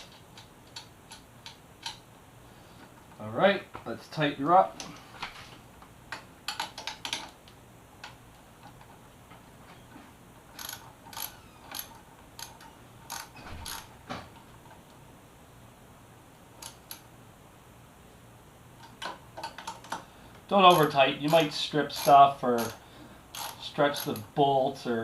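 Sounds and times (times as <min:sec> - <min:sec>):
ratchet wrench clicking: 0:10.6 - 0:13.9, 0:20.7 - 0:24.3.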